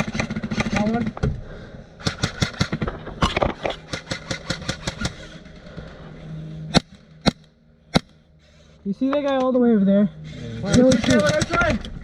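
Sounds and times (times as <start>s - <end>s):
airsoft gun shots: 2.0s - 5.2s, 6.7s - 8.2s.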